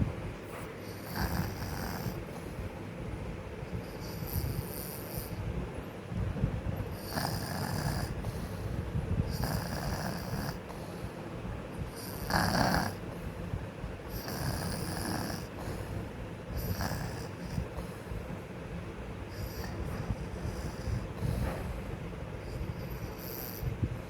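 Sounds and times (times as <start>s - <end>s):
child snoring: 0.9s - 2.6s, 3.9s - 5.4s, 6.9s - 11.1s, 11.8s - 13.1s, 14.1s - 18.1s, 19.3s - 21.6s, 22.5s - 23.8s.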